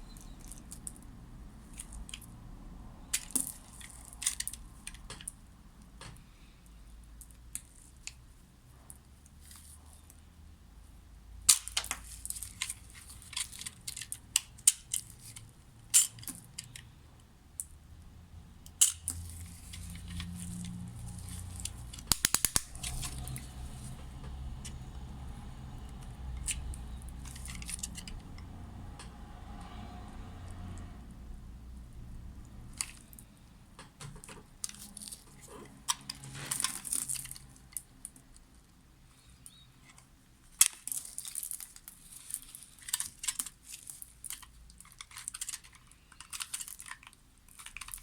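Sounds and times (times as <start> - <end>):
quick clicks: 22.0 - 23.4.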